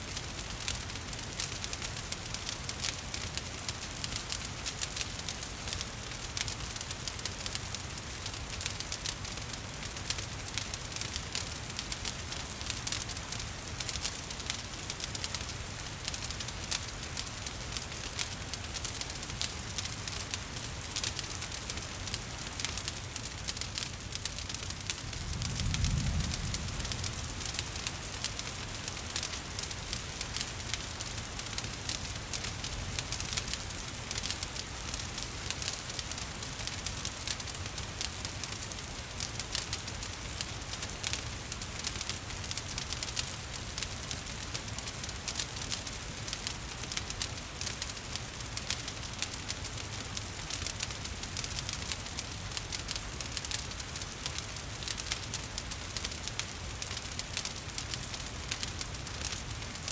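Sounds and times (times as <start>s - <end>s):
wood fire crackling: 0.0s - 59.9s
rain falling: 0.1s - 59.9s.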